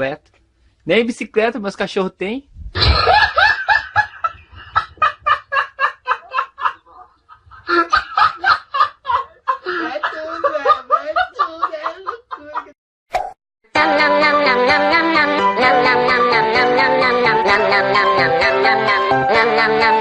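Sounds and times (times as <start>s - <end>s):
person laughing hard: 2.8s - 12.7s.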